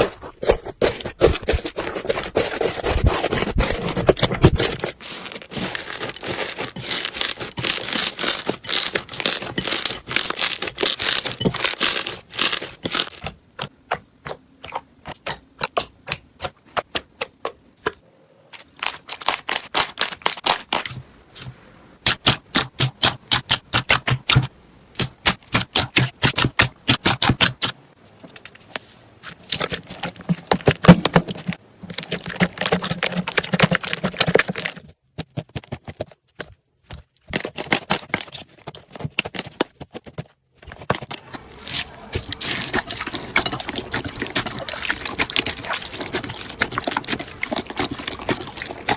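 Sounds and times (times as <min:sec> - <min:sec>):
crunchy slime crackling: 0:03.7 - 0:13.4, 0:41.2 - 0:48.9.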